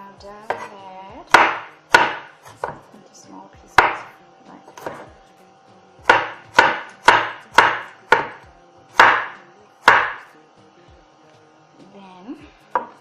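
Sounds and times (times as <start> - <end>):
knife chopping fruit: 0.4 - 3.0, 3.7 - 5.2, 6.0 - 10.3, 12.6 - 13.0.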